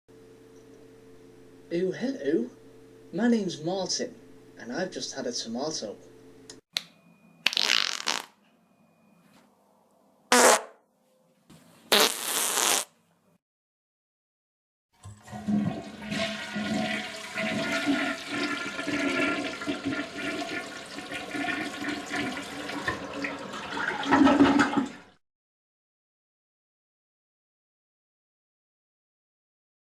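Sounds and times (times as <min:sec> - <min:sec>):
toilet flushing: 0:15.0 - 0:25.2.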